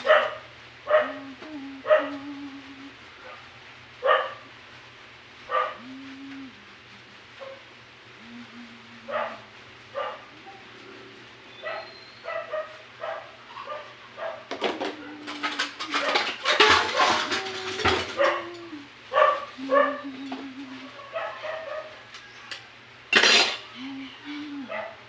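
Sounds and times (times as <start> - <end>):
dog barking: 0.0 - 2.2, 3.2 - 4.5, 5.5 - 5.9, 7.4 - 7.7, 9.0 - 10.8, 11.6 - 17.3, 17.9 - 20.2, 20.8 - 22.1, 24.7 - 25.0
clattering: 14.5 - 18.4, 23.2 - 23.7.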